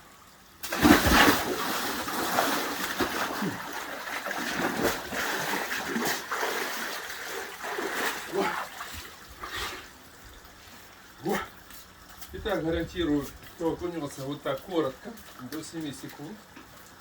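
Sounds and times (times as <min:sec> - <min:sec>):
person splashing into water: 0:00.6 - 0:09.6
water sloshing and splashing: 0:00.6 - 0:17.0.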